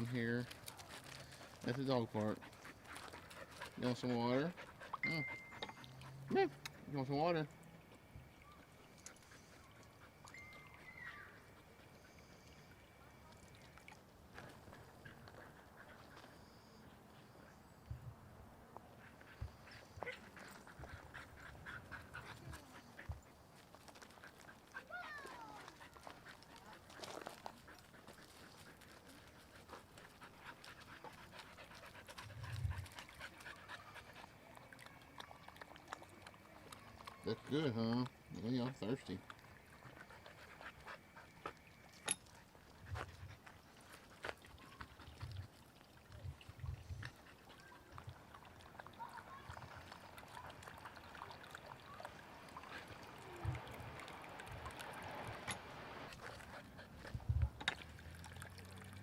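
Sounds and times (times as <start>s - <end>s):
dog panting: 0.0s - 7.0s, 8.9s - 10.4s, 14.4s - 17.7s, 18.8s - 45.6s, 46.8s - 51.3s, 54.7s - 57.4s
water trickling and splashing: 0.0s - 17.8s, 18.9s - 59.0s.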